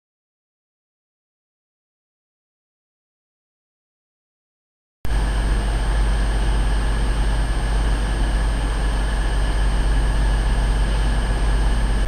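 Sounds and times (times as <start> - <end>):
diesel train engine rumble: 5.1 - 12.0
steady whining tones: 5.1 - 12.0.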